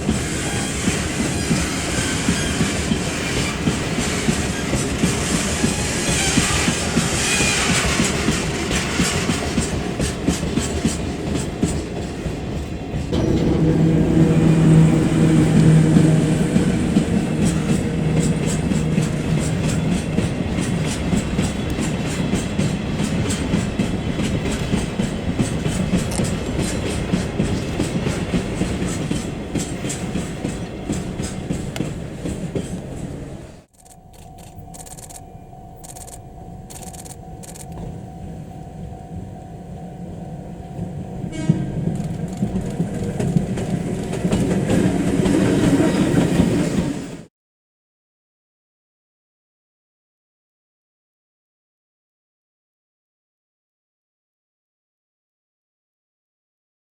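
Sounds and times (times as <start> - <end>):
model train humming: 0.0 - 33.7
wheels clicking over rail joints: 0.0 - 33.8, 41.3 - 47.1.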